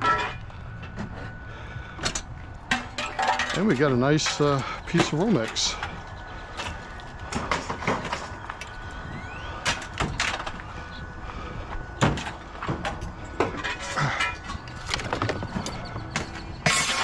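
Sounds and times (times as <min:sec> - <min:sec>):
metal parts rattling: 0:00.0 - 0:01.3, 0:02.0 - 0:08.8, 0:12.2 - 0:17.0
scrap metal knocking and clattering: 0:02.1 - 0:05.9.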